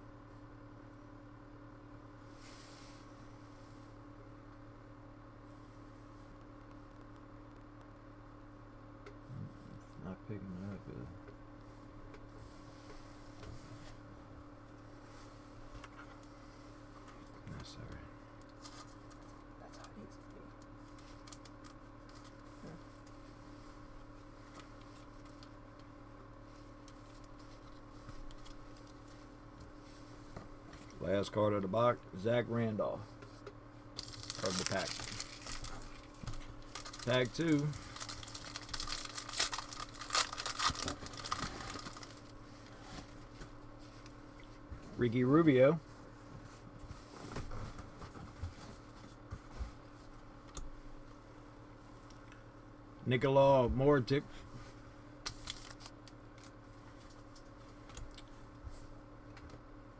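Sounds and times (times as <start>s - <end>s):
steady electrical hum: 0.0s - 59.9s
trading cards clicking and rustling: 34.0s - 42.2s.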